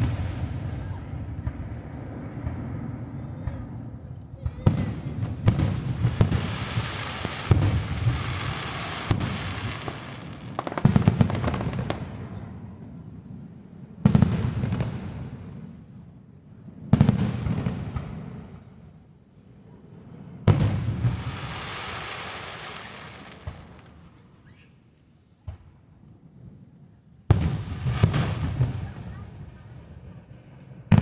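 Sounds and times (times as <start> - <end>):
fireworks booming: 0.0 - 12.7, 14.0 - 15.8, 16.9 - 18.8, 20.2 - 24.2, 27.3 - 31.0.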